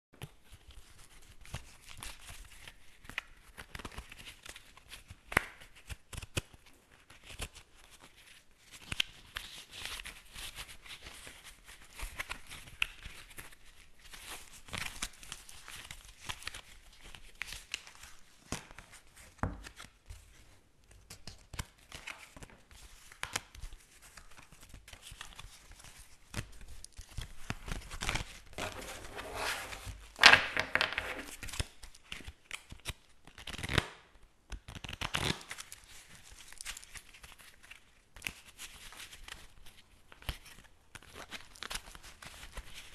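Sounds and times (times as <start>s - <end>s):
playing cards being shuffled: 27.2s - 33.9s, 34.7s - 35.7s.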